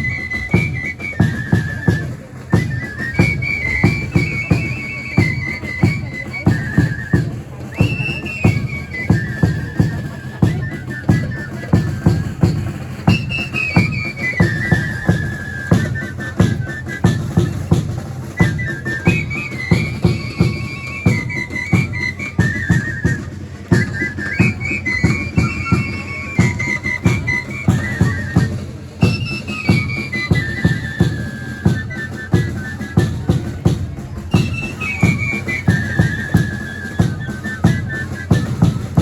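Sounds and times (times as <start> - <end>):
shrill flute melody: 0.0 - 39.0
driving drum beat: 10.8 - 32.1, 33.3 - 36.6.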